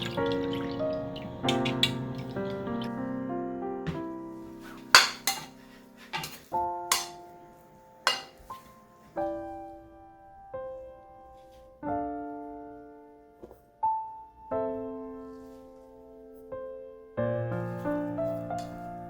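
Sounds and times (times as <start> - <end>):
slow piano music: 0.0 - 19.0
utensils clinking against dishes: 4.6 - 7.2, 8.1 - 8.6.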